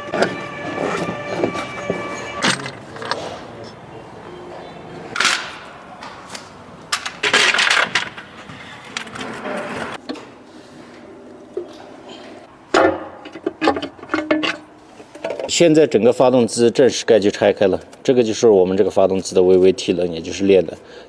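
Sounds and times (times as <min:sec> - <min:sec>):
tools and metal parts clinking: 0:00.0 - 0:03.8, 0:05.1 - 0:09.3, 0:13.2 - 0:15.5.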